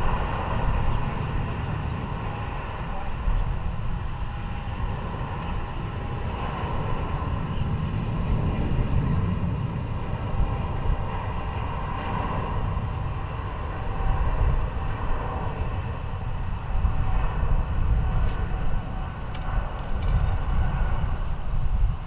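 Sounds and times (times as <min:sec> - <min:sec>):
distant jet engines rumbling: 0:00.0 - 0:22.0.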